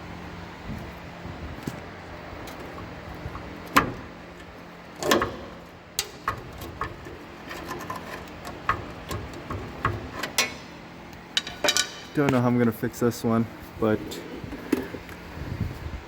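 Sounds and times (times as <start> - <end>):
metal clunks and knocks: 5.0 - 10.7, 11.3 - 12.4.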